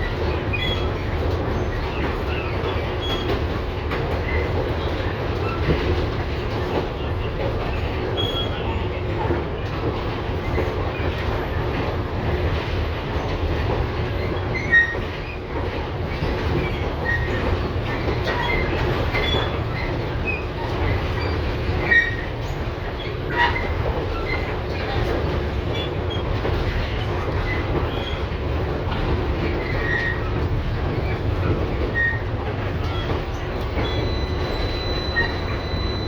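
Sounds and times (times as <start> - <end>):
tram wheels rumbling on rail: 0.0 - 36.0
wheels squeaking: 31.9 - 36.0.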